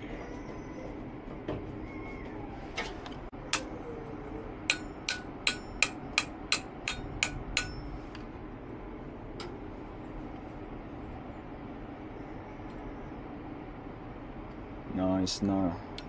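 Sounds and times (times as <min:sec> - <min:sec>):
sharp metallic taps: 0:04.7 - 0:08.0.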